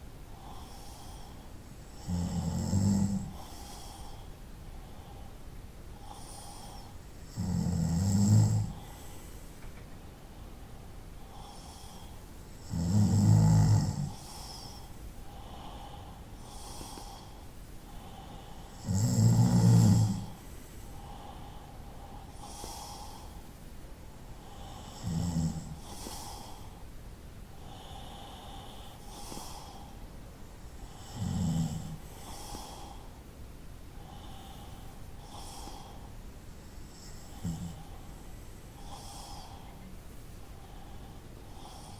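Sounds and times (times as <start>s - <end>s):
person snoring: 0.4s - 4.2s, 6.0s - 9.2s, 11.3s - 17.3s, 18.0s - 20.4s, 24.4s - 26.7s, 30.8s - 33.0s, 36.9s - 38.0s.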